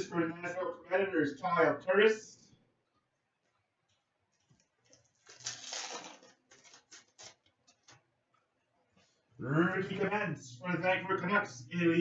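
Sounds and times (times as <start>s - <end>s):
wrapper crinkling: 4.5s - 8.0s.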